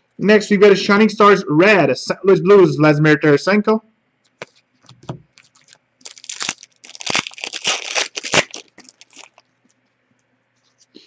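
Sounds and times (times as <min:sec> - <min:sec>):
wrapper tearing and crinkling: 0:05.3 - 0:09.5.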